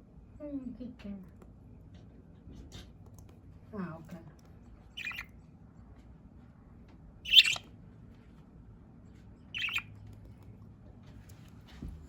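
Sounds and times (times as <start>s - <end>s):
budgerigar squawking: 5.0s - 5.2s, 7.3s - 7.6s, 9.6s - 9.8s.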